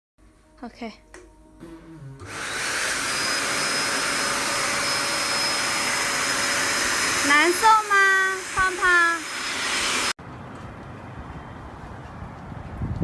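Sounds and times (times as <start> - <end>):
electric blower rushing whoosh: 1.6 - 10.2.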